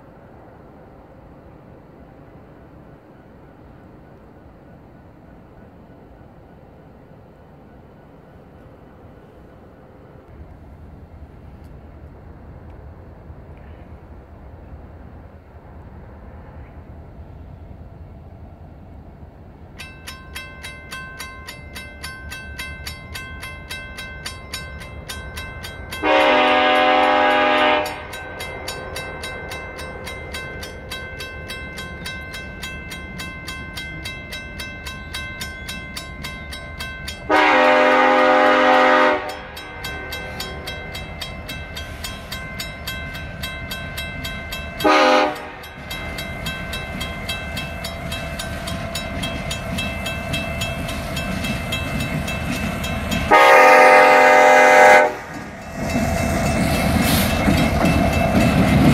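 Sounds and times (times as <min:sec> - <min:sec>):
train rumble: 0:00.0 - 0:58.9
train horn blasts: 0:25.9 - 0:28.4, 0:37.2 - 0:40.7, 0:44.8 - 0:45.8, 0:53.2 - 0:55.4.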